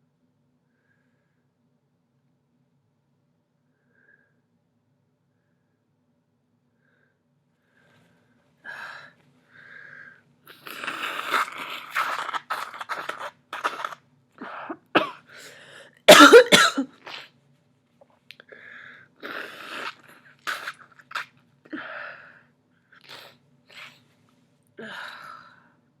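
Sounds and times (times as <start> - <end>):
person coughing: 13.6 - 15.3, 16.1 - 17.2.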